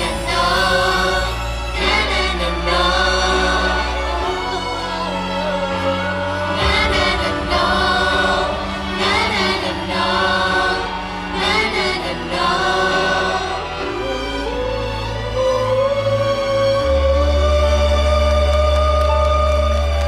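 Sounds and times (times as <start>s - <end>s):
layered vocal harmonies: 0.0s - 20.0s
steady bass: 0.0s - 20.0s.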